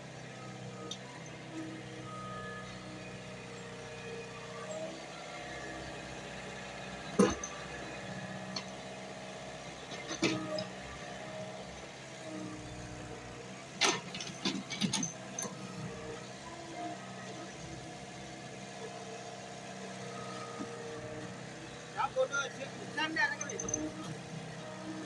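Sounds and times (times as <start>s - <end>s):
excavator diesel engine running: 0.0s - 25.0s.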